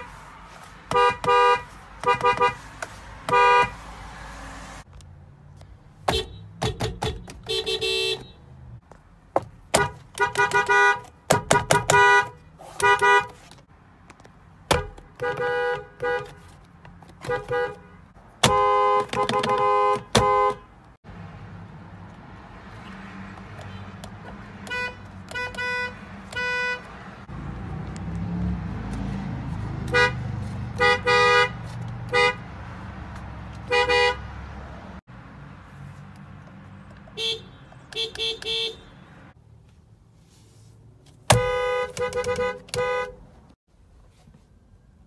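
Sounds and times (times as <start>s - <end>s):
engine and road rumble: 0.0s - 45.0s
car horn beeps: 0.9s - 2.6s, 3.2s - 3.8s, 6.0s - 8.6s, 9.8s - 13.5s, 14.8s - 16.5s, 17.2s - 20.8s, 23.6s - 24.0s, 24.6s - 26.9s, 29.9s - 32.4s, 33.7s - 34.3s, 37.1s - 39.2s, 41.3s - 43.3s.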